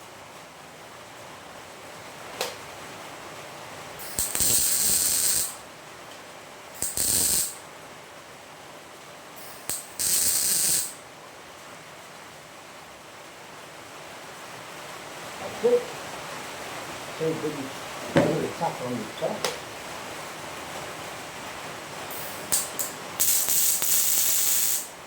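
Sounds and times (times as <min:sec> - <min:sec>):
arc welding sizzling hiss: 0:01.1 - 0:08.2, 0:08.9 - 0:12.5, 0:19.5 - 0:25.0
welder sharp click: 0:04.0 - 0:05.6, 0:06.8 - 0:07.6, 0:09.4 - 0:11.0, 0:22.1 - 0:24.9.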